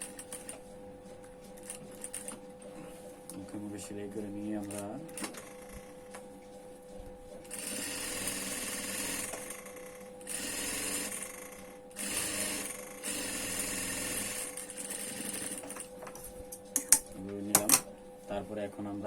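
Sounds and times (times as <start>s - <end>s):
steady hum: 0.0s - 19.0s
sewing machine stitching: 10.3s - 15.8s.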